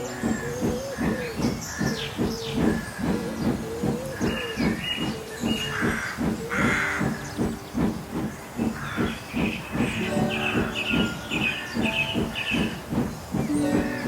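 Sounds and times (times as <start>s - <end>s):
steam hissing: 0.0s - 14.0s
steam locomotive chuffing: 0.0s - 14.0s.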